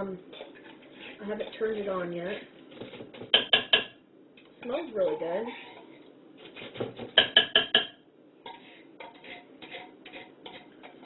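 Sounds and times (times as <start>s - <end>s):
spoon scraping: 8.4s - 11.0s.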